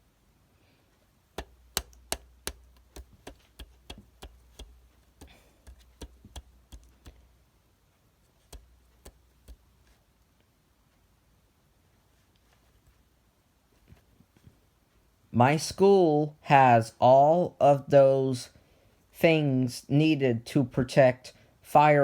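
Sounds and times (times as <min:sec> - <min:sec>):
sharp clicks or taps: 0:01.4 - 0:07.2, 0:08.4 - 0:09.7.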